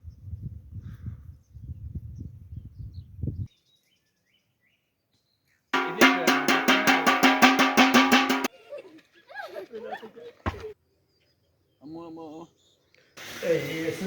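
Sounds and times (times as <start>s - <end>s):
loud music with rapid drums: 5.8s - 8.5s.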